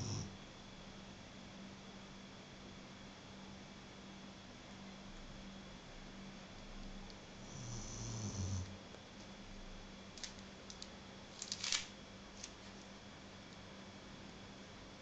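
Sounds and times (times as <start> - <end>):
low snore: 0.0 - 0.4, 7.4 - 8.7.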